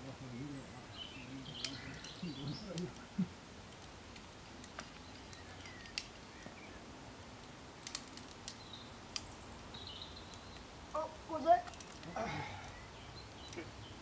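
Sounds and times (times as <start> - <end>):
faint bird chirp: 0.0 - 3.4, 4.6 - 7.0, 8.5 - 14.0.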